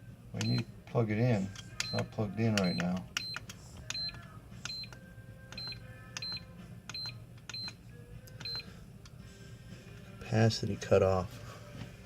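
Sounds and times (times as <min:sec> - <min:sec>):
battery charger beeps: 0:00.4 - 0:00.7, 0:01.8 - 0:07.8, 0:08.4 - 0:08.8
button clicks: 0:00.4 - 0:00.7.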